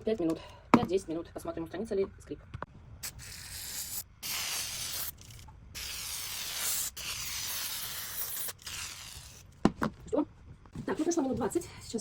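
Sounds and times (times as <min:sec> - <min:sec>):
aerosol can spraying: 0:03.0 - 0:09.4.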